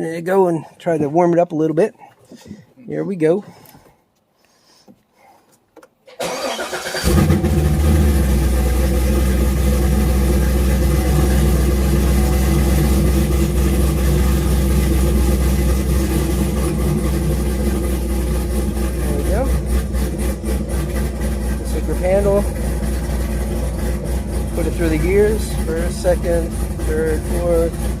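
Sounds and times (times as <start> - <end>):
car engine starting and idling: 6.1 - 28.0.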